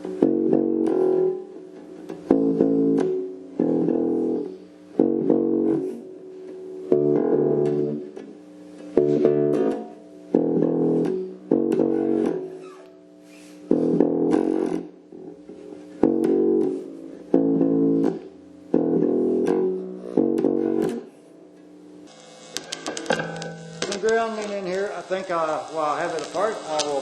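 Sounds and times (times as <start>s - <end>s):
plucked electric bass notes: 0.0s - 12.6s, 13.6s - 21.2s.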